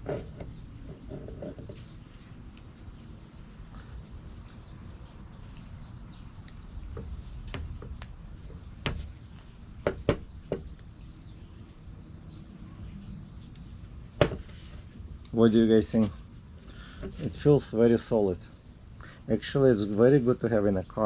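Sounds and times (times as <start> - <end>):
bird chirping: 0.1 - 2.0, 2.6 - 14.8.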